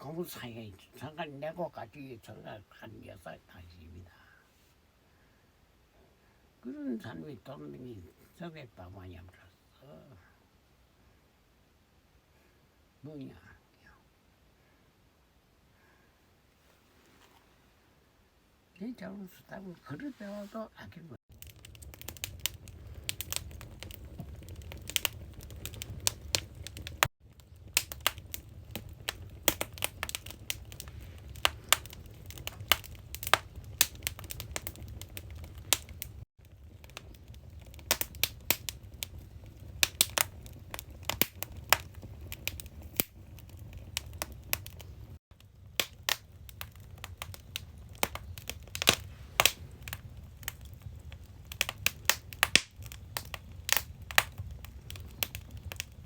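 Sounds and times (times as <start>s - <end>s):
firewood crackling and popping: 0.0s - 4.4s, 21.2s - 56.0s
low rumble of fire: 0.0s - 10.4s, 18.7s - 56.0s.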